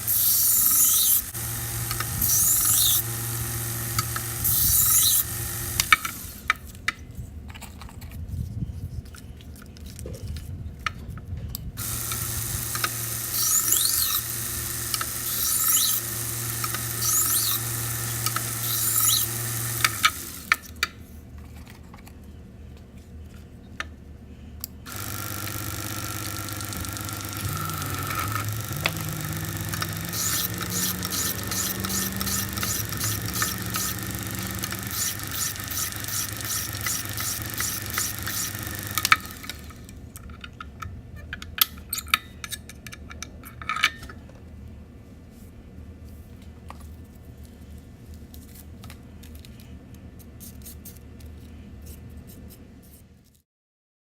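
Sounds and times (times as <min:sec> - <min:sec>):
blade grinding on abrasive: 0:00.0 - 0:06.5, 0:11.8 - 0:20.7, 0:24.9 - 0:39.8
sharpening machine motor: 0:00.0 - 0:06.6, 0:11.8 - 0:20.8, 0:24.9 - 0:39.9.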